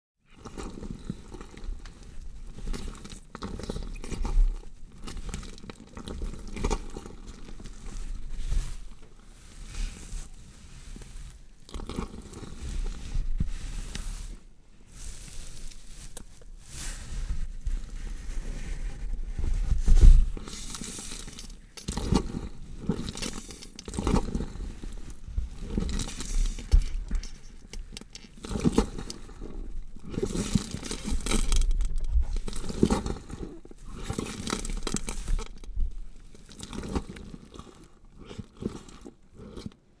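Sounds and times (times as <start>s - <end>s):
flesh tearing and crunching: 0.4s - 9.1s, 20.4s - 39.8s.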